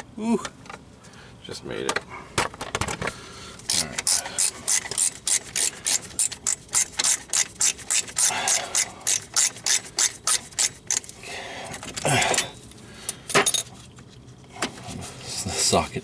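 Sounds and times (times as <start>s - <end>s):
socket ratchet clicking: 3.7s - 11.1s.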